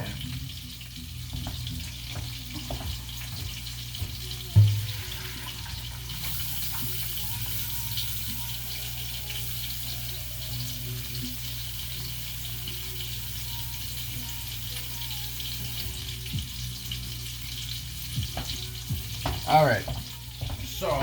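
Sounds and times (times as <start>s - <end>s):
water running in sink: 0.0s - 21.0s.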